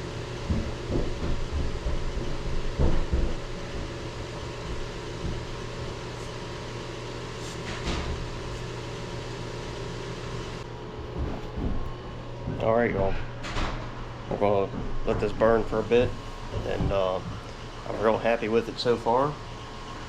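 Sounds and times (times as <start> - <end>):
pellet stove fans whirring: 0.0 - 20.0.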